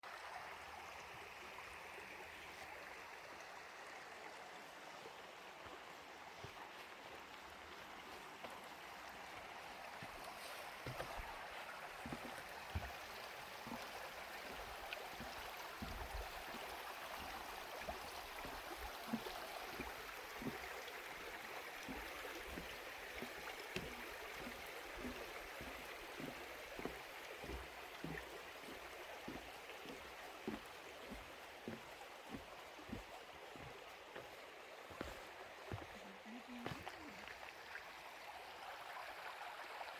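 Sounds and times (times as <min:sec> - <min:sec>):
water rushing: 0:00.0 - 0:39.9.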